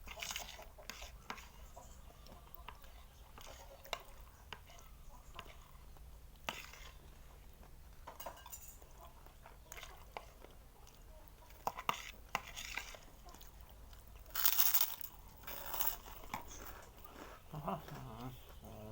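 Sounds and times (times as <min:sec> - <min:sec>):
person chewing crunchy food: 0:08.8 - 0:18.9.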